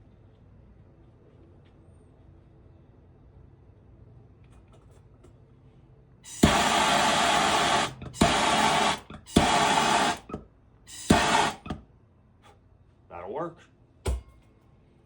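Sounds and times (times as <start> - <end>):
blowtorch hissing flame: 6.3 - 11.8
blowtorch ignition click: 6.3 - 11.8.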